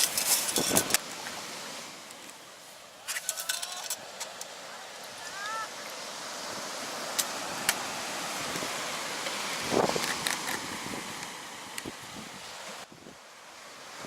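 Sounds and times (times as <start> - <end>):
wind on microphone: 0.0 - 1.0, 6.2 - 13.2
surf rushing: 0.0 - 14.0.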